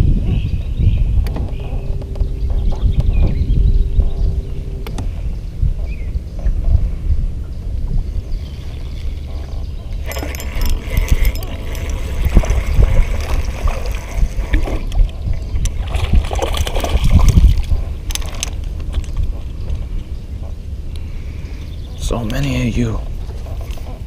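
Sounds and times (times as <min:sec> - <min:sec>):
wind rumbling on microphone: 0:00.0 - 0:24.0
water splashing and sloshing: 0:07.6 - 0:21.4, 0:23.0 - 0:24.0.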